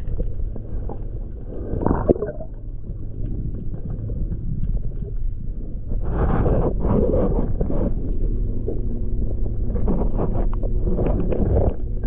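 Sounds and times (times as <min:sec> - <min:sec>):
muffled underwater rumble: 0:00.0 - 0:12.0
diver exhaling bubbles: 0:01.4 - 0:02.6.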